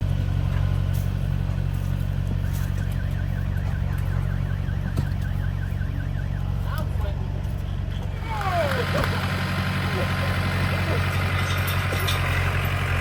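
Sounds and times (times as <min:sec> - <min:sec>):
vehicle engine running: 0:00.0 - 0:13.0
warbling warning alarm: 0:01.4 - 0:07.4.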